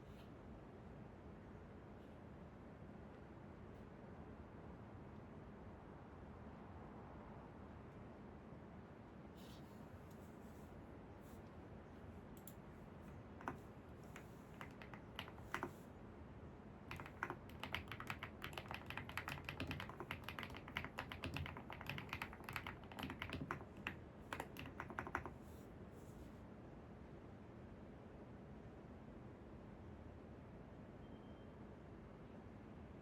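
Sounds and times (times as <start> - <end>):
faint background noise: 0.0 - 33.0
computer keyboard typing: 12.4 - 15.8, 16.9 - 25.6.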